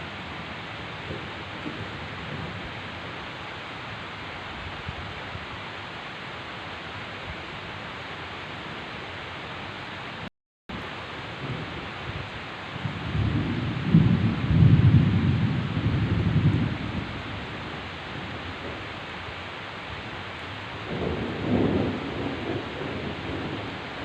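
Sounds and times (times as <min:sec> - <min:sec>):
low thunder rumble: 0:00.0 - 0:03.5, 0:10.8 - 0:24.0
heavy rain hissing: 0:00.0 - 0:24.0.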